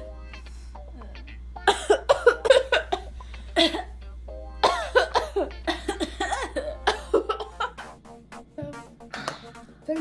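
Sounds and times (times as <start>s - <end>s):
background music: 0.0s - 10.0s
person coughing: 1.6s - 4.0s, 4.6s - 7.8s.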